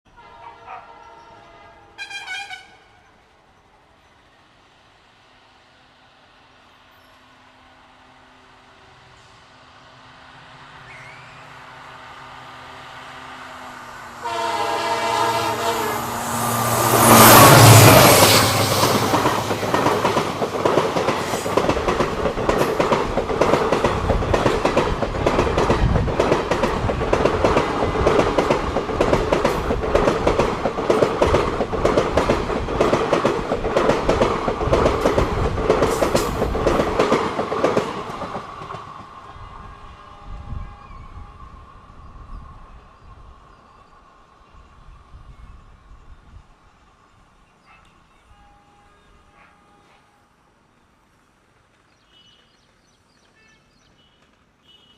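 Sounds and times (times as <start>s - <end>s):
locomotive air horn: 0.1s - 3.1s, 14.2s - 18.5s, 48.2s - 50.3s, 53.3s - 54.9s
train passing: 0.1s - 54.6s
train coaches clattering over rails: 14.2s - 39.2s.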